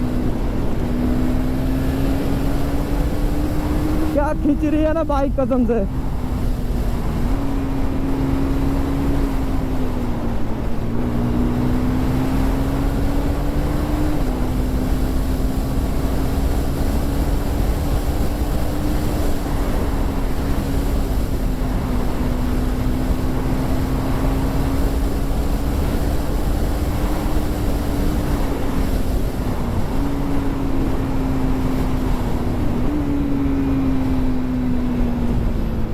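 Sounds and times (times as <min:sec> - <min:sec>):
wind over microphone: 0:00.0 - 0:35.9.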